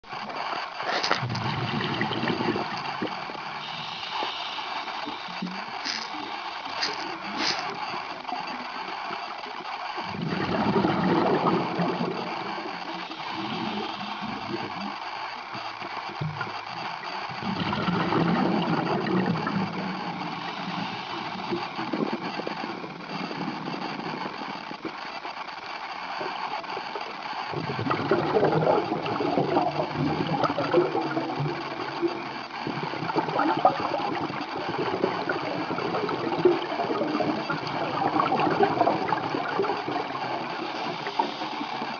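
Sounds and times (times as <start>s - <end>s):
regulator hiss: 0.0s - 41.9s
air bubbling underwater: 0.8s - 3.6s, 10.1s - 12.4s, 17.4s - 19.8s, 33.0s - 40.6s.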